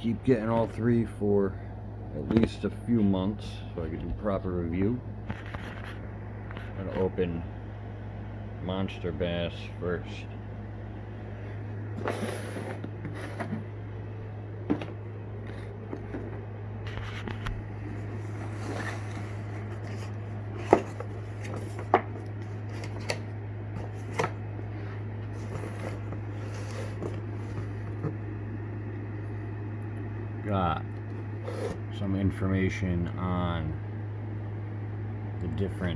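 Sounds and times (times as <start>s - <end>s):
steady low hum: 0.0s - 35.9s
cardboard box rustling and tapping: 14.6s - 16.4s, 17.4s - 24.4s.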